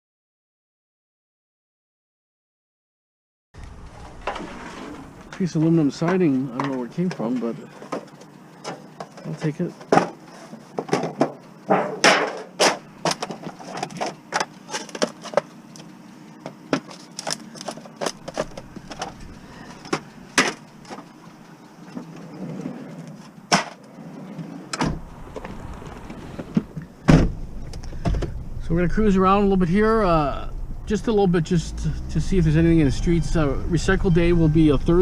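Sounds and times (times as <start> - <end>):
aluminum siding clattering: 4.0 - 28.4
low rumble: 18.2 - 20.8, 24.8 - 35.0.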